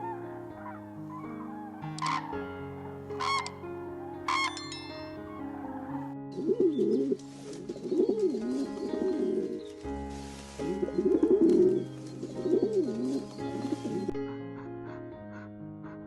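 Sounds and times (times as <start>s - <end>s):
bird calling in low phrases: 0.0s - 2.4s, 3.2s - 3.5s, 4.3s - 4.6s
background music: 0.0s - 16.0s.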